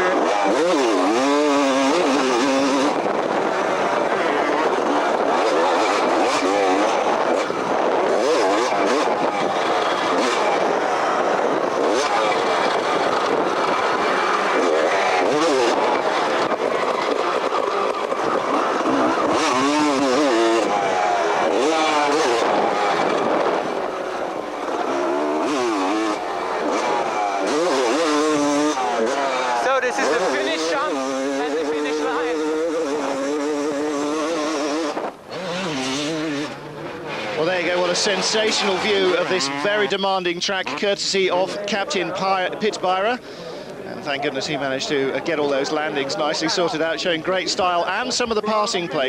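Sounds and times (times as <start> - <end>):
wind noise on microphone: 0.0 - 29.3, 31.2 - 37.2
motocross bike engine revving: 0.0 - 49.0.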